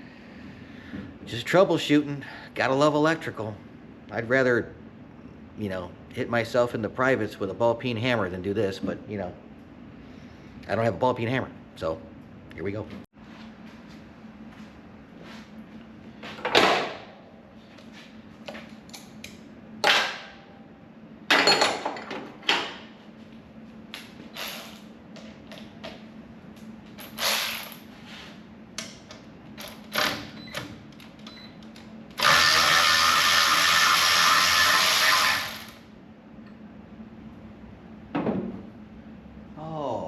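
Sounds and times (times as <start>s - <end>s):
power tool running: 32.2s - 35.8s.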